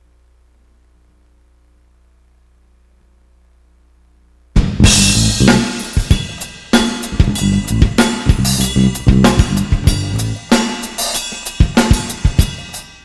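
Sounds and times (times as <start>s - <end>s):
low pitched bass notes: 4.6s - 5.8s, 7.1s - 10.5s
kick and snare drum hits: 4.6s - 11.0s
crashing cymbals and hi-hat: 4.6s - 13.0s
live rock band playing: 4.6s - 13.0s.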